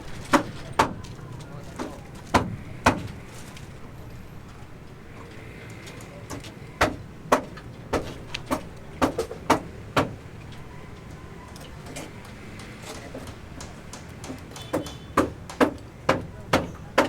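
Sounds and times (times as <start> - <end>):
sharp knocks: 1.7 - 3.2, 6.3 - 10.2, 13.0 - 17.0.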